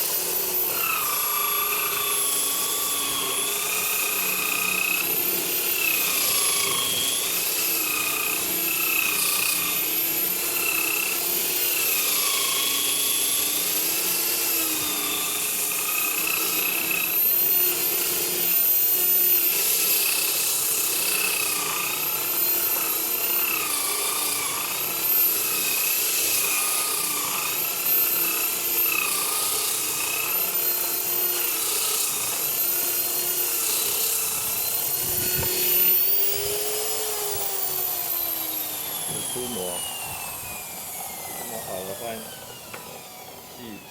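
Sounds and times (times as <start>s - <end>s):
drill sander grinding wood: 0.0s - 43.9s.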